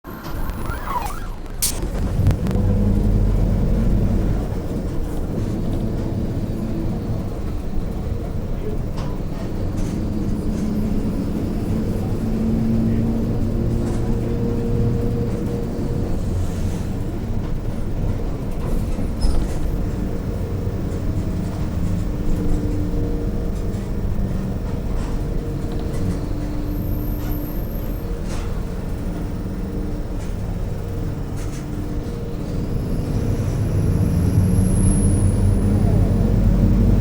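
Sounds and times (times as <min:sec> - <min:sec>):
bus drivetrain rumble: 0:00.0 - 0:37.0
differential humming growl: 0:33.4 - 0:37.0.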